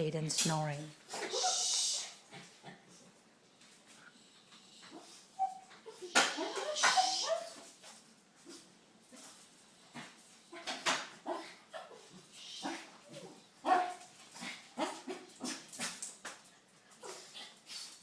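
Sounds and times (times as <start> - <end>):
dog whimpering and yipping: 5.0 - 7.6.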